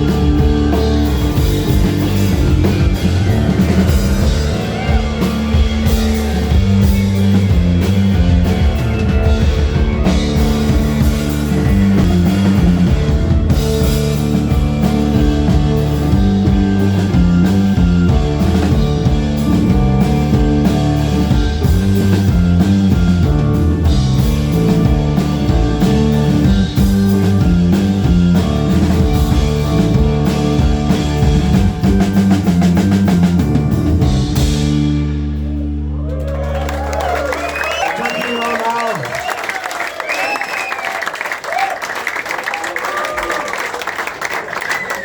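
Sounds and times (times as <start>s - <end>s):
drum kit beat: 0.0s - 35.7s
droning guitar and bass: 0.0s - 37.8s.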